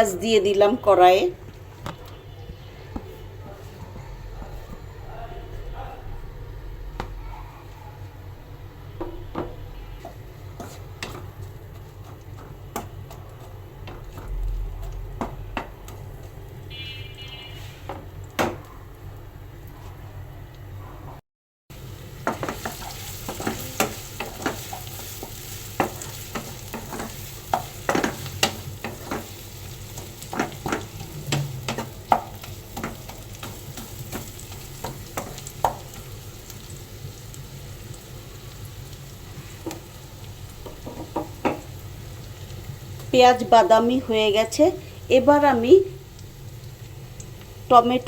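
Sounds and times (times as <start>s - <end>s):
onions sizzling in oil: 8.8s - 19.6s, 21.7s - 48.0s.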